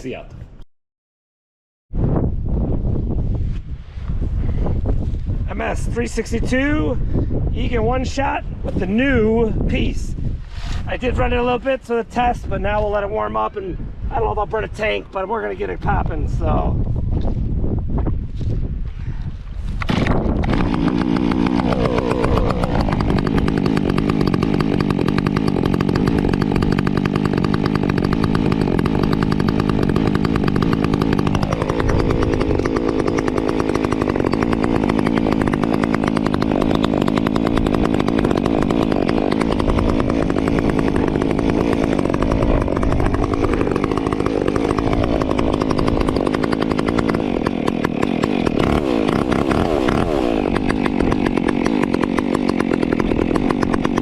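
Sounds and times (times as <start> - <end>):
chainsaw revving: 19.8 - 54.0.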